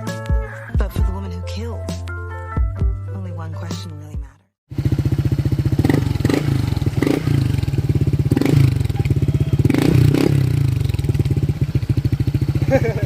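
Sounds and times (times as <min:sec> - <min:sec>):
scooter engine idling: 0:04.7 - 0:13.0.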